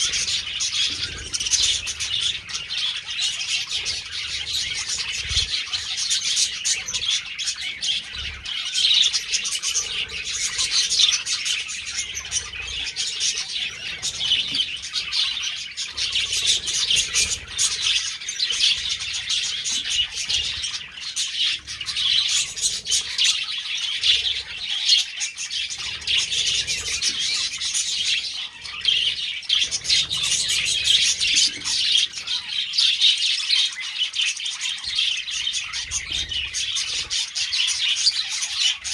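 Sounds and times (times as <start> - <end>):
budgerigars chirping: 0.0 - 38.9.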